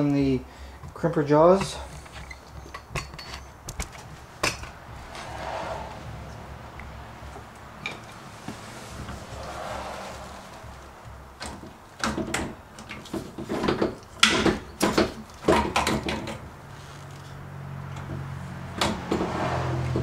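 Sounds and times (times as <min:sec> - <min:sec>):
knocks and clicks of pipe fittings: 0:11.4 - 0:16.4.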